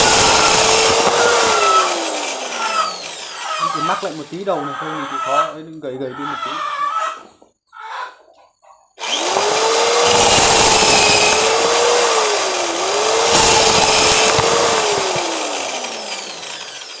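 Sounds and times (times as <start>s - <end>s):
cordless drill motor whine: 0.0s - 4.4s, 9.0s - 17.0s.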